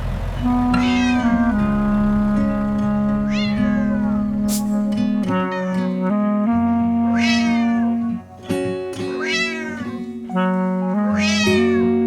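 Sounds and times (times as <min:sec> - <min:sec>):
background music held notes: 0:00.0 - 0:12.0
cat meowing: 0:00.7 - 0:01.6, 0:03.0 - 0:04.6, 0:05.3 - 0:06.0, 0:07.1 - 0:08.2, 0:09.0 - 0:10.1, 0:11.1 - 0:11.9.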